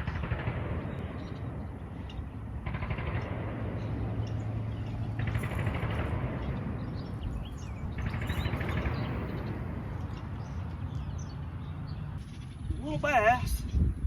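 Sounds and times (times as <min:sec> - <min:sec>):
birds chirping: 0:00.0 - 0:14.0
low outdoor rumble: 0:00.0 - 0:14.0.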